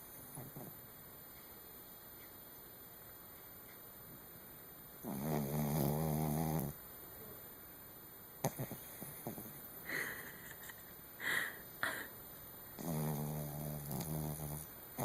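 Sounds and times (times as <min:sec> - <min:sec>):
dog snoring: 0:00.0 - 0:00.8, 0:05.0 - 0:06.8, 0:08.4 - 0:09.7, 0:12.8 - 0:15.0.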